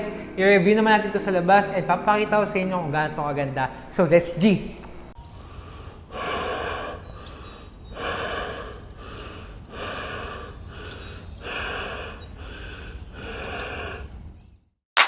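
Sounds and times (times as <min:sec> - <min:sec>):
person breathing heavily: 0:00.1 - 0:00.4, 0:05.3 - 0:14.3.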